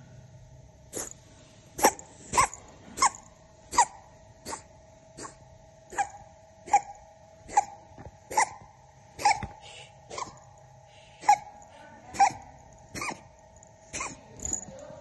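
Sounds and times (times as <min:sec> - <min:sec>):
faint steady whine: 0:00.0 - 0:15.0
cat coughing: 0:01.8 - 0:06.9, 0:07.5 - 0:08.6, 0:09.2 - 0:10.4, 0:12.1 - 0:13.3, 0:13.9 - 0:14.4.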